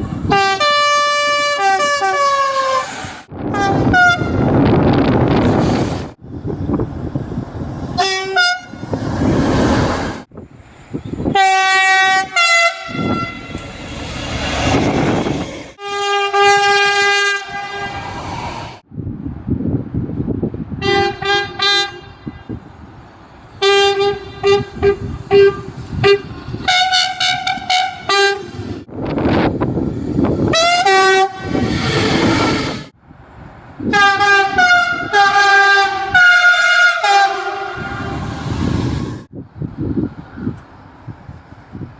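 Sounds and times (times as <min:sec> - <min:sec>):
rumble of passing trains: 0:00.0 - 0:41.9
train horn blasts: 0:00.2 - 0:04.6, 0:08.0 - 0:08.9, 0:11.3 - 0:13.7, 0:15.8 - 0:18.1, 0:20.8 - 0:22.6, 0:23.6 - 0:28.8, 0:30.5 - 0:32.9, 0:33.8 - 0:38.4.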